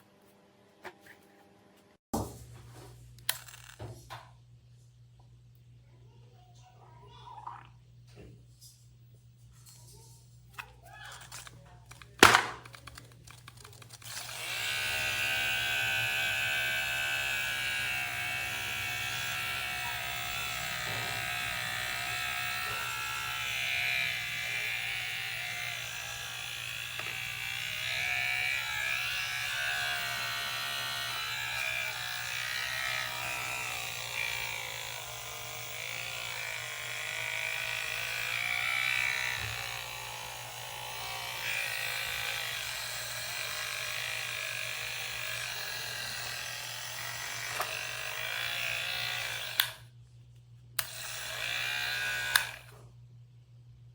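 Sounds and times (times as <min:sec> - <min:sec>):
electric hair clipper buzzing: 0:03.3 - 0:03.9, 0:10.6 - 0:49.9, 0:50.8 - 0:52.8.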